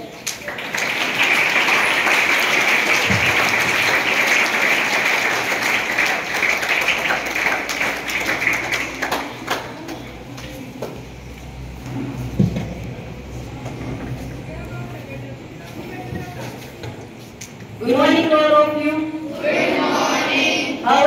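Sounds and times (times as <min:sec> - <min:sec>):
audience applauding: 0:00.0 - 0:10.2.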